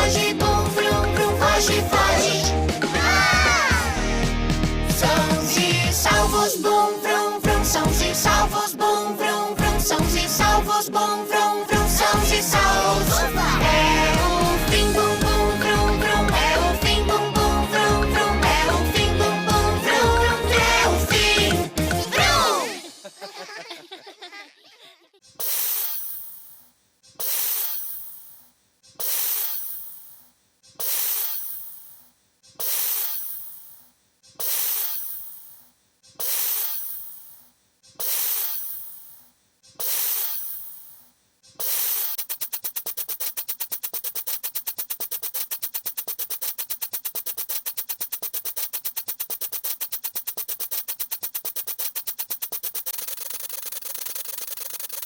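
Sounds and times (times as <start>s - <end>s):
hiss-like noise bursts: 32.6s - 33.7s
fast rasping noise: 41.6s - 55.0s.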